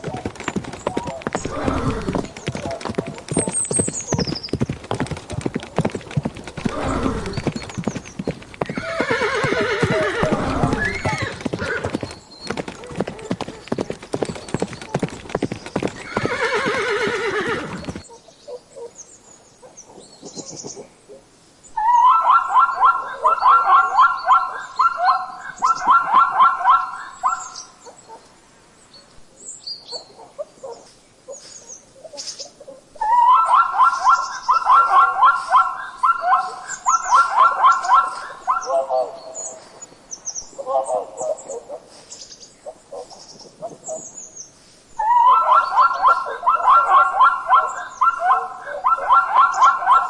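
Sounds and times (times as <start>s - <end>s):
horse hooves clip-clopping: 0.0s - 18.0s
rapid pulsing animal calls: 0.0s - 18.0s
horse whinny: 1.4s - 2.3s, 6.6s - 7.6s, 8.6s - 12.0s, 16.0s - 18.0s.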